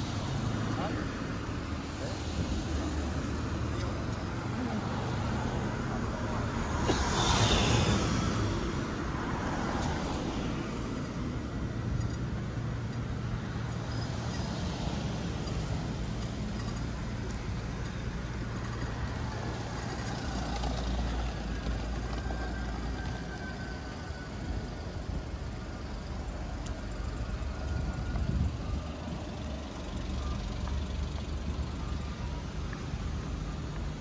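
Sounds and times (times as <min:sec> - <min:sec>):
road traffic rumble: 0:00.0 - 0:34.0
vehicle engines running: 0:00.0 - 0:34.0.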